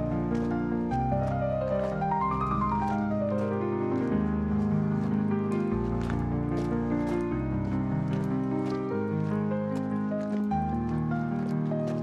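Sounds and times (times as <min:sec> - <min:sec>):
music with sustained notes: 0:00.0 - 0:12.0.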